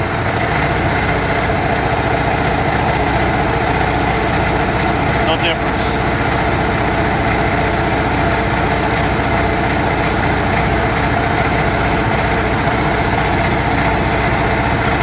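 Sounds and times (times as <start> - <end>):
watercraft engine idling: 0.0 - 15.0.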